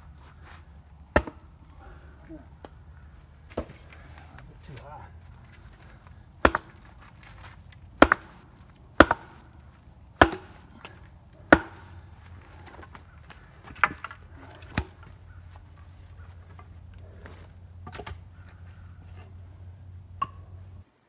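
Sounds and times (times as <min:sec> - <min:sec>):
sharp blows on wood: 0:06.4 - 0:07.0, 0:08.0 - 0:12.8.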